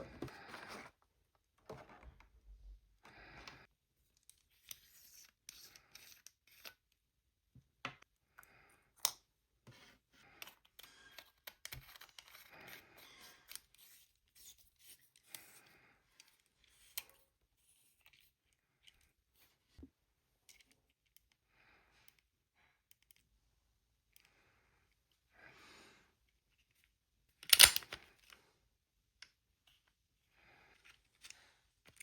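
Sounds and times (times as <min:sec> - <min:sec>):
faint handling rustling and scraping: 0:00.0 - 0:02.4
sharp clicks: 0:27.5 - 0:28.0.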